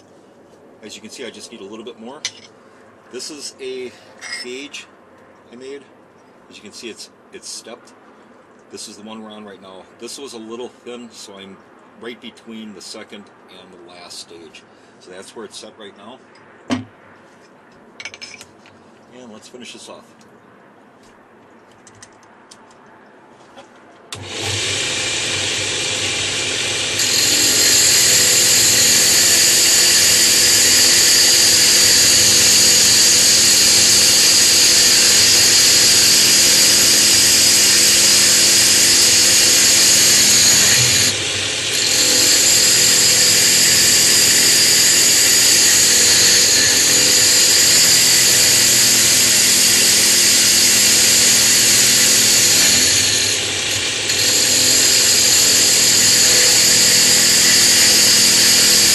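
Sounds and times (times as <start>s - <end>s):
power tool milling stone tile: 24.2s - 58.9s.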